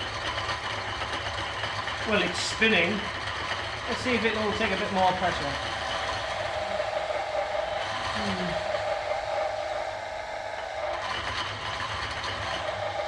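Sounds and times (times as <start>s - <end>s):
electric motor driving a lathe: 0.0s - 13.0s.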